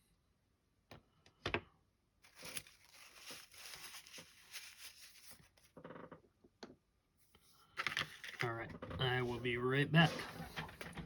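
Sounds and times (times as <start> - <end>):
parts and tools rustling: 2.2 - 5.8.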